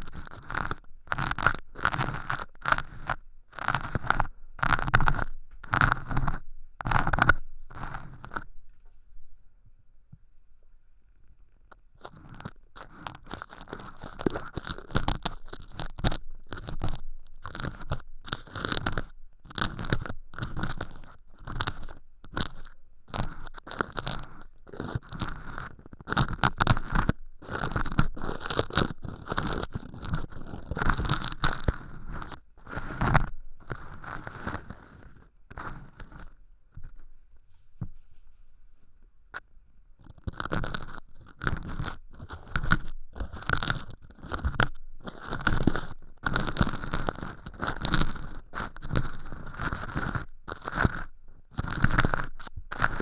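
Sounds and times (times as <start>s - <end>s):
earpick scraping crunchy flakes: 12.0s - 37.0s, 40.0s - 53.0s.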